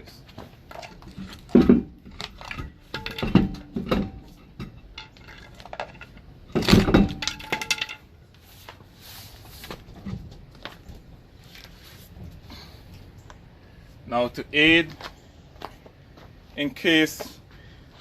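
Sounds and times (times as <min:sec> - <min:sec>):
pry bar clanking on metal wheel: 0:00.7 - 0:08.0.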